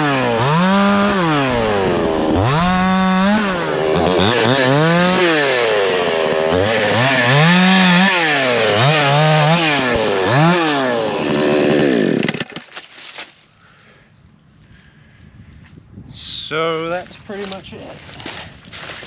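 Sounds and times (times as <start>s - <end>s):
chainsaw cutting wood: 0.0s - 12.9s.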